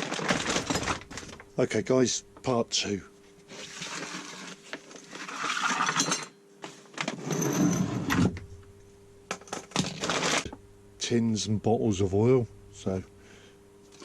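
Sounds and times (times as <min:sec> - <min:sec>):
rustling and scraping: 0:03.2 - 0:06.0.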